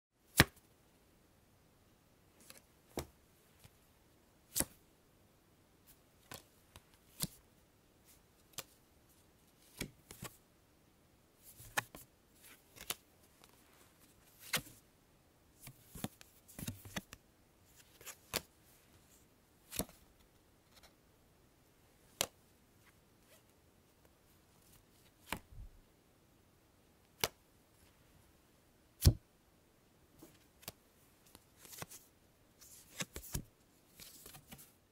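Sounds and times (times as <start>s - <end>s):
card sliding rustle: 31.6s - 34.7s.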